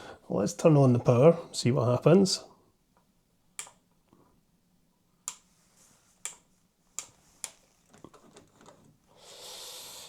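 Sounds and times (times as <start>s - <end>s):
sharp clicks: 3.6s - 3.8s.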